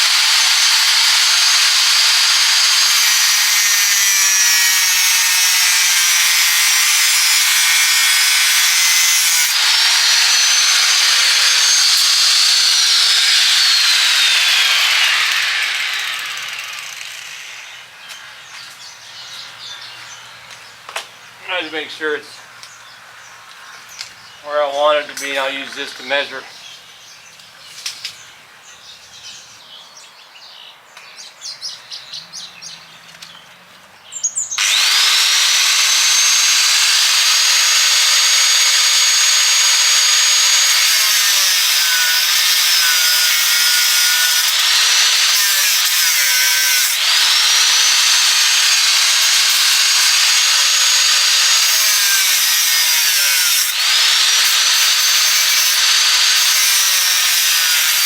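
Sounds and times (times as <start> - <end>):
electric cutting tool whining: 0.0 - 18.6, 34.6 - 58.0.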